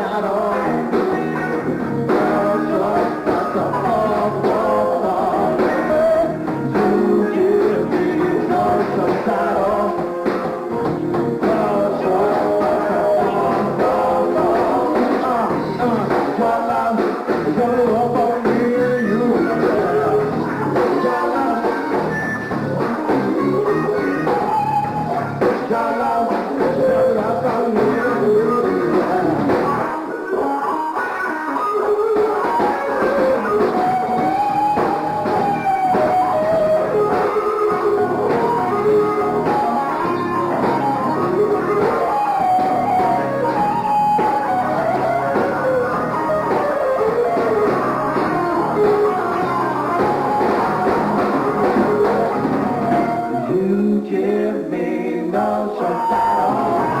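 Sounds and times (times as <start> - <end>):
electric guitar lead: 0.0 - 57.0
live r and b band playing: 0.0 - 57.0
gliding melodic lead line: 32.0 - 53.5.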